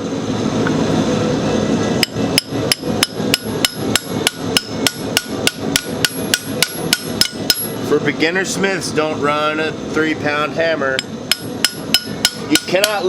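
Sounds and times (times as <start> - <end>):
steady rushing background noise: 0.0 - 13.0
hammer striking chisel on metal: 2.0 - 7.8, 11.0 - 13.0.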